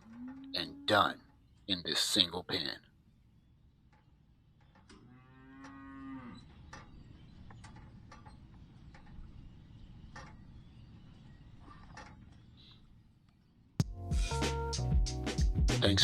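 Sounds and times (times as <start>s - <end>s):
cow mooing: 0.0s - 1.1s, 5.0s - 6.5s.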